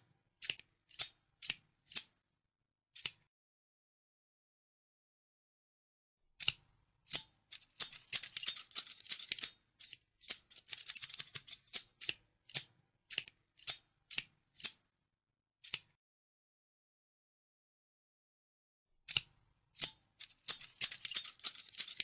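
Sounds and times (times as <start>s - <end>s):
scissors snipping: 0.4s - 2.1s, 3.0s - 3.2s, 6.4s - 14.8s, 15.6s - 15.9s, 19.1s - 22.0s.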